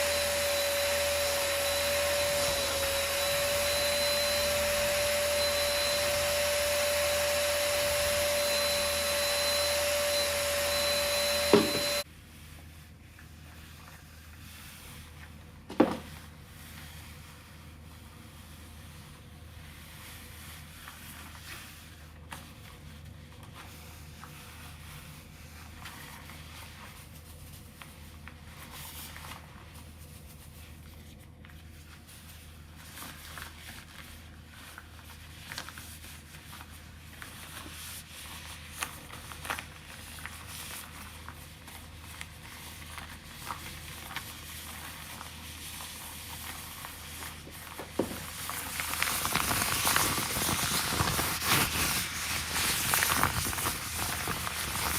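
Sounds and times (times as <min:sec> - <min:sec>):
vacuum cleaner humming: 0:00.0 - 0:12.0.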